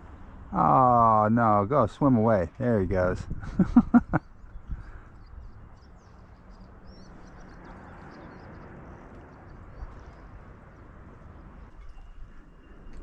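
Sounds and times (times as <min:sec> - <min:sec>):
outdoor background noise: 0:00.0 - 0:13.0
faint high bird chirps: 0:04.2 - 0:13.0.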